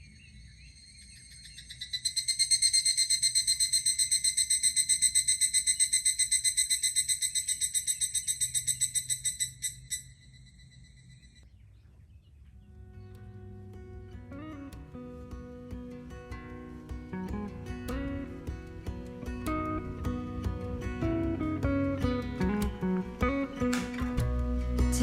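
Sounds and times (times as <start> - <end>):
insect chirring: 0.0 - 11.4.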